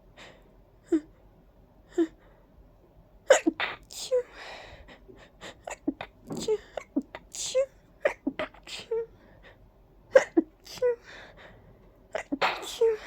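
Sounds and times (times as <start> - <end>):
catching breaths: 4.3 - 5.7
person sneezing: 12.2 - 13.0.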